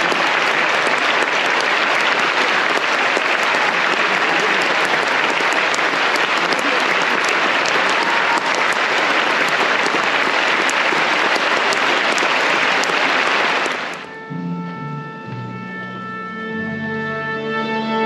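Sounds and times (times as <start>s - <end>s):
audience applauding: 0.0s - 14.1s
music of slow held notes: 14.1s - 18.0s.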